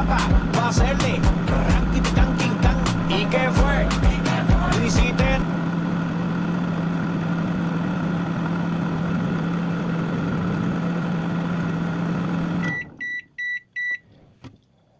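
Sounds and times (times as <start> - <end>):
microwave oven humming: 0.0 - 14.0
high microwave beeps: 12.6 - 14.0.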